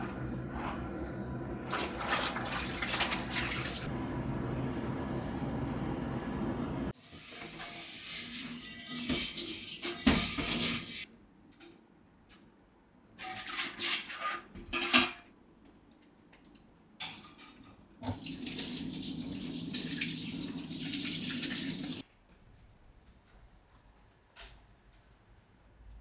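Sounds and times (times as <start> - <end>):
tap water running into sink: 1.6 - 3.9, 18.0 - 22.0.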